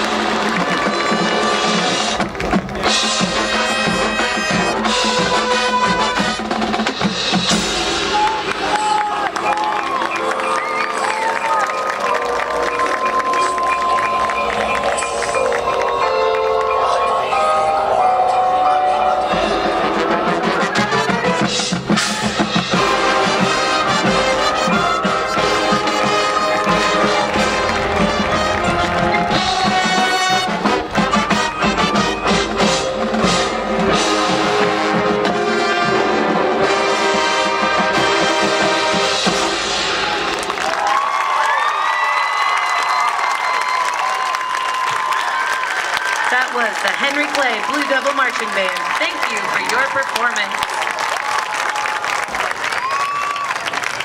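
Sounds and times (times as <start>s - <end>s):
brass and woodwinds chords: 0.0s - 2.2s, 2.8s - 40.2s
marching band playing: 0.0s - 41.1s, 43.2s - 54.0s.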